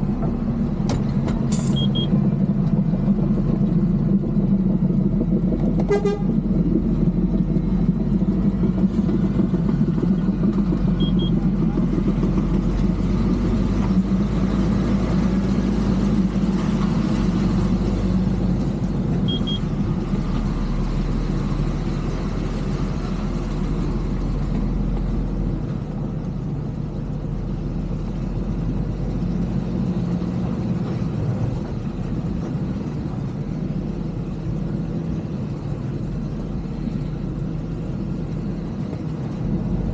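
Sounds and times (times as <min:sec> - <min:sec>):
heavy diesel engine running: 0:00.0 - 0:39.9
horn toot: 0:05.8 - 0:06.4.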